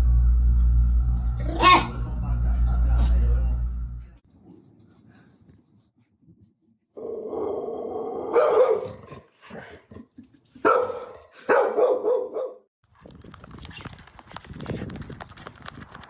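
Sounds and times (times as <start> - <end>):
dog barking loudly: 8.2 - 9.0, 10.6 - 12.7.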